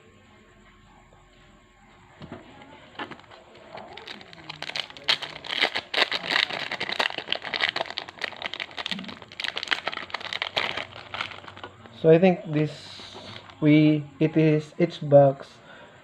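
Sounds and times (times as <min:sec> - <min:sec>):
foil wrapper crinkling: 0:02.9 - 0:12.0, 0:13.0 - 0:13.6.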